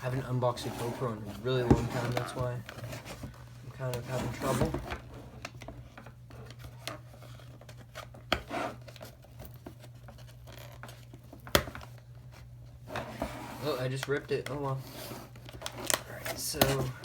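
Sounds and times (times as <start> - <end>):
packaging scratching and clicking: 13.6 - 17.0
packaging snapping and ripping: 15.4 - 16.9.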